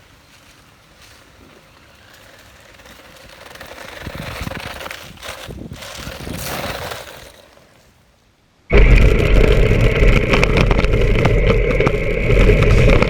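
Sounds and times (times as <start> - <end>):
toy truck tyres rattling: 1.0 - 8.0.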